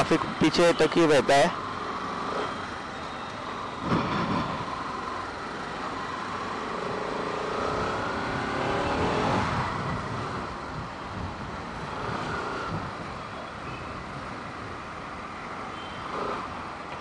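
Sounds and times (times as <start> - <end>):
road noise: 0.0 - 17.0
motorcycle engine accelerating: 3.8 - 10.8.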